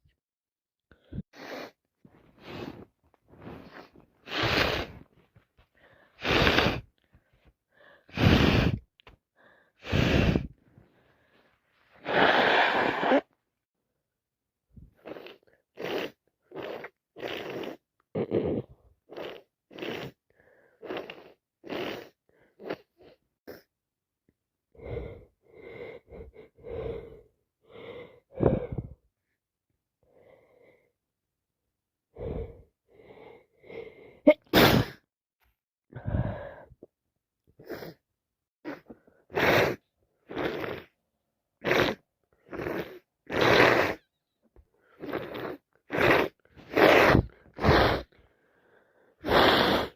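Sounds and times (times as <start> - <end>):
person sniffing blocked nose: 1.3 - 1.8, 2.4 - 5.1, 6.2 - 6.9, 8.1 - 8.8, 9.8 - 10.6, 12.0 - 13.3, 15.0 - 20.2, 20.8 - 23.6, 34.5 - 35.0, 37.6 - 38.0, 38.7 - 41.0, 41.6 - 44.0, 45.0 - 48.2, 49.2 - 49.9
person sneezing: 34.3 - 35.0.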